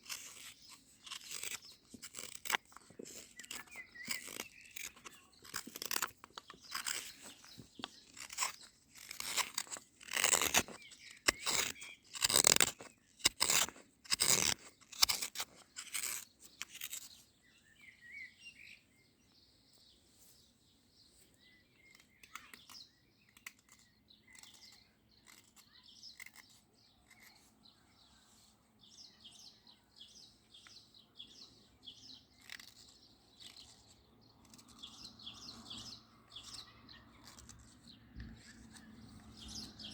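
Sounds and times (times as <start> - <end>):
blade shaving wood: 0.0 - 17.3, 21.8 - 27.6, 30.2 - 39.9
birds chirping: 0.4 - 8.8, 16.6 - 39.9.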